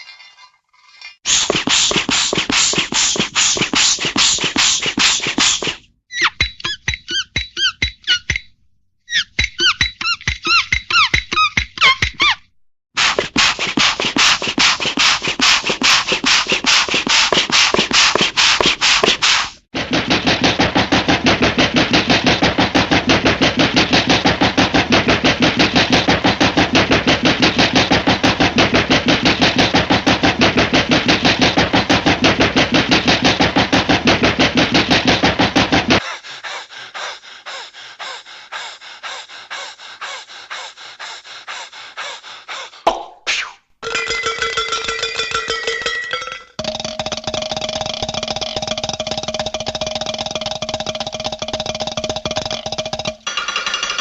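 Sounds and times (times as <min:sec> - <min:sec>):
cartoon mechanical rattle: 0:46.6 - 0:54.0.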